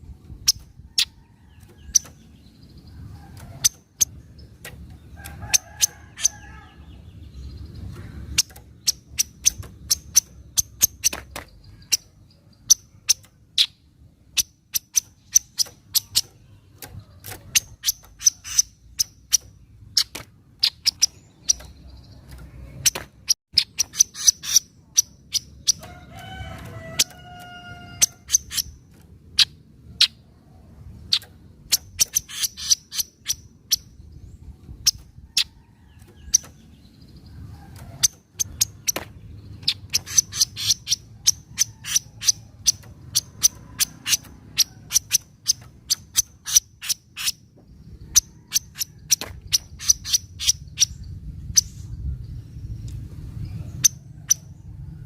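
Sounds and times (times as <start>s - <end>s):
bird chattering rapid ticking call: 8.2s - 25.9s, 27.0s - 30.2s, 31.0s - 33.9s, 38.0s - 47.4s, 48.1s - 51.7s.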